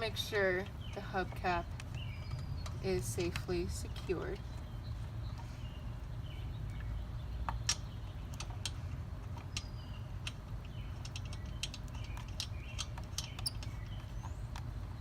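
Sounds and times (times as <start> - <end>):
steady low rumble: 0.0 - 15.0
lug nuts clicking and tapping: 6.6 - 15.0.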